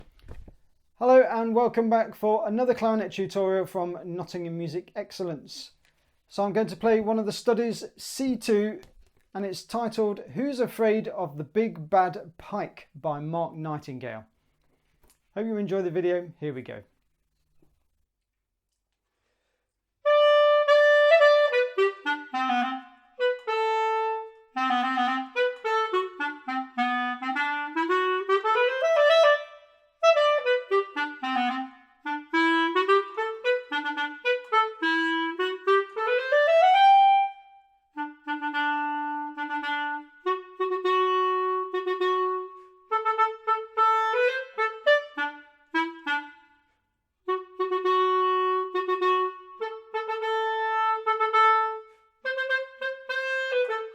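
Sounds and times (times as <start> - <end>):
solo clarinet melody: 20.0 - 53.9.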